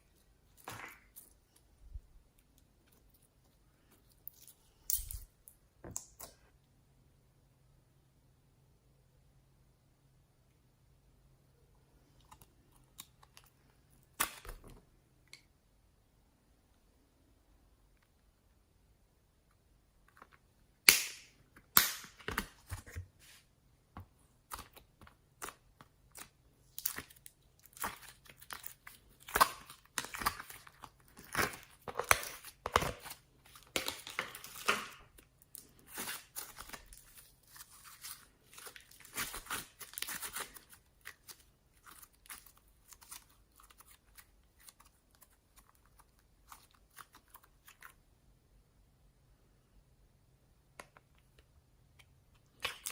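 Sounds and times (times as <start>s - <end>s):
slime being kneaded and stretched: 24.4s - 48.0s.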